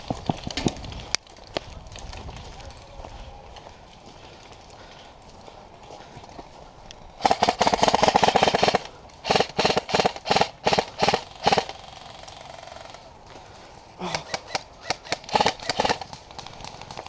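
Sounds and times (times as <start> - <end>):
airsoft gun firing bursts: 7.2 - 12.9, 14.0 - 17.0.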